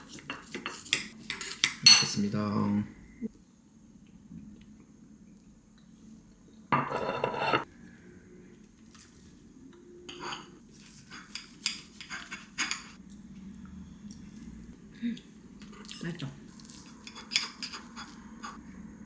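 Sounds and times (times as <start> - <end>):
cutlery and dishes clinking: 0.0 - 2.3, 6.8 - 7.7, 10.1 - 13.0, 15.6 - 18.6.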